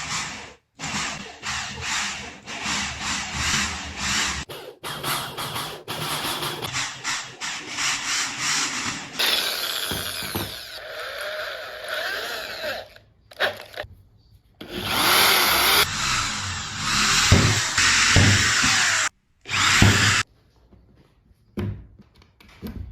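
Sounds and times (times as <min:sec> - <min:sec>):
hand saw cutting wood: 0:14.6 - 0:20.2
power tool on wood: 0:14.6 - 0:20.2.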